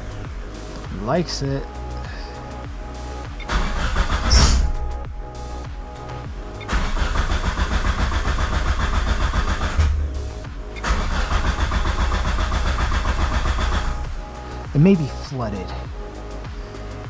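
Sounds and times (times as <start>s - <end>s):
car engine cranking on starter: 3.4s - 4.8s, 6.6s - 10.1s, 10.8s - 14.2s.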